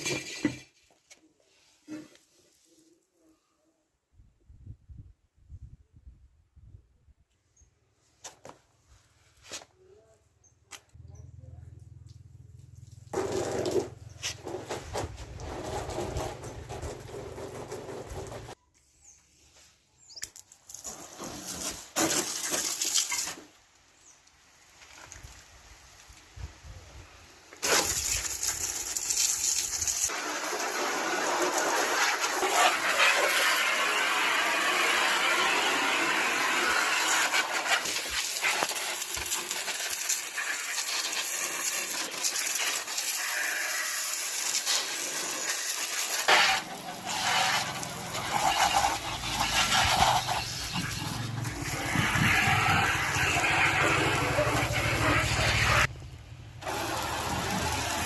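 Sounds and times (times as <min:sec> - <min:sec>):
pressure washer spraying water: 0:27.6 - 0:55.9, 0:56.6 - 0:58.0.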